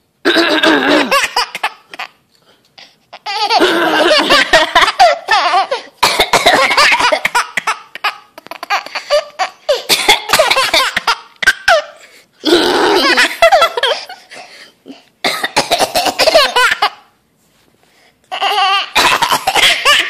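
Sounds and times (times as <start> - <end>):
woman coughing: 0.3 - 2.0, 6.0 - 7.8, 9.7 - 11.9, 14.9 - 16.8, 18.9 - 20.0
baby laughing hard: 0.3 - 2.2, 3.1 - 12.0, 12.8 - 14.4, 15.7 - 17.1, 18.3 - 20.0.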